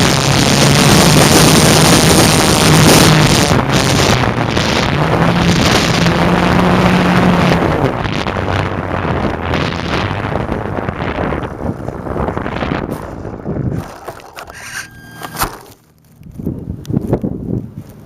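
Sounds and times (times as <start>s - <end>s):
wind rushing over microphone: 0.0s - 18.0s
model plane electric motor: 13.7s - 15.8s.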